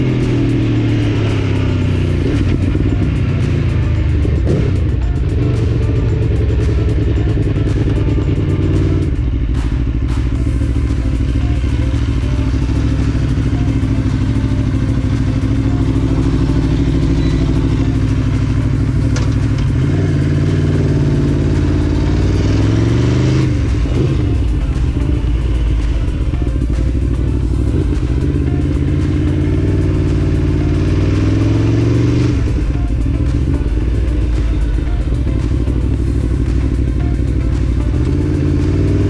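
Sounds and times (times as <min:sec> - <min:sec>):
motorcycle engine running: 0:00.0 - 0:39.0.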